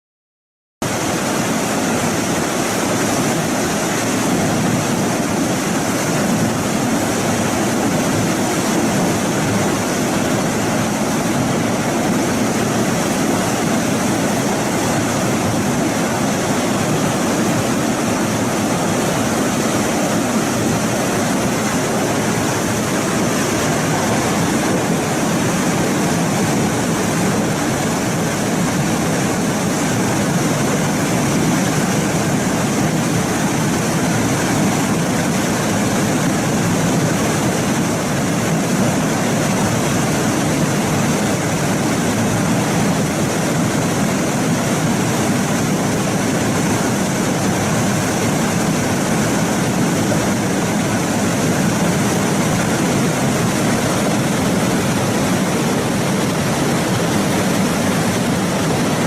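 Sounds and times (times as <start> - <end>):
loud steady rushing noise: 0.8 - 59.0.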